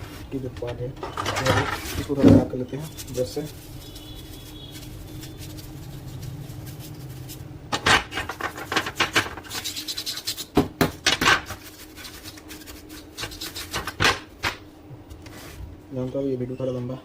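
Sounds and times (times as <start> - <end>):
brush scrubbing plastic part: 2.8 - 7.5.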